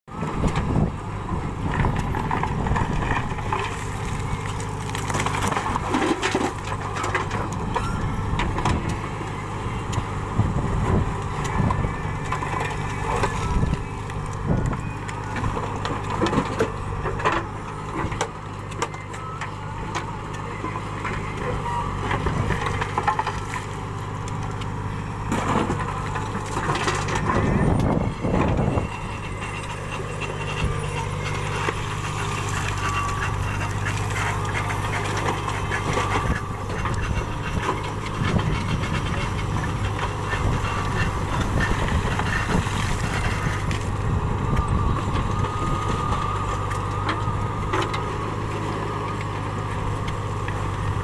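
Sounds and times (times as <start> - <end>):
diesel engine running: 0.0 - 51.0.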